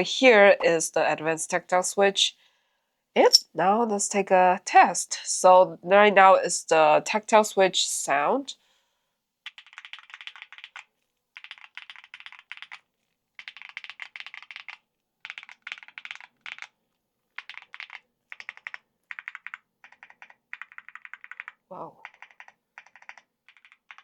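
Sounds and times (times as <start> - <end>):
mechanical keyboard typing clicks: 9.5 - 10.8, 11.4 - 12.8, 13.4 - 16.7, 17.4 - 24.0.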